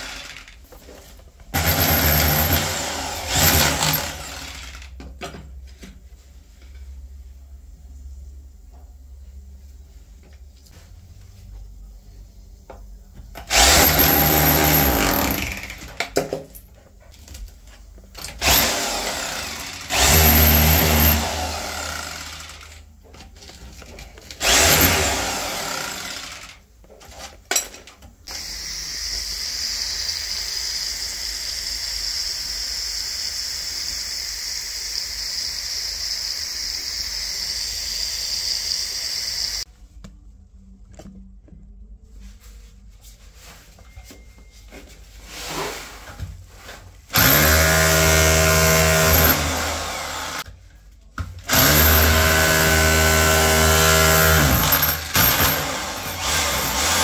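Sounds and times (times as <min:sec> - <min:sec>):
power tool cutting into tile: 0:01.6 - 0:04.9, 0:13.5 - 0:15.9, 0:18.4 - 0:22.8, 0:24.4 - 0:26.6, 0:28.3 - 0:39.6, 0:47.1 - 0:50.5, 0:51.5 - 0:57.0.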